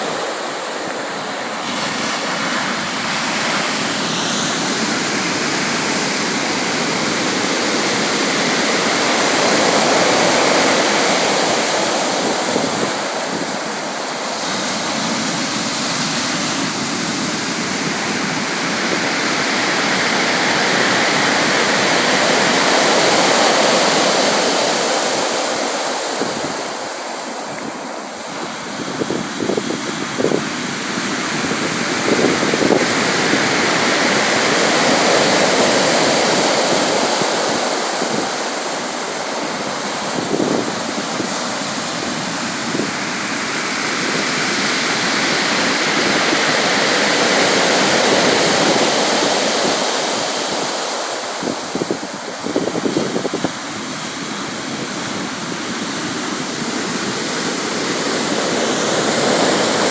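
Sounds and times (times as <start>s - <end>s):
sea waves and surf: 0.0s - 59.9s.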